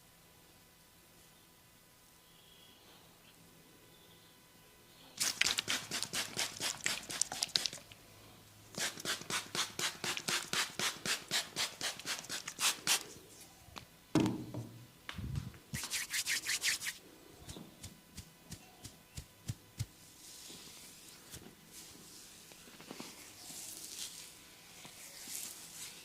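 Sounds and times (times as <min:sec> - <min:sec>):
fingers scratching hair: 0:08.8 - 0:13.1, 0:15.7 - 0:26.0.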